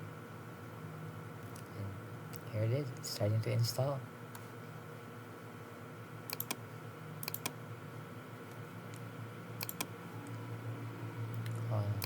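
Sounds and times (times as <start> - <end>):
steady low hum: 0.0 - 12.0
computer keys clicking: 6.3 - 6.6, 7.2 - 7.6, 9.6 - 10.4.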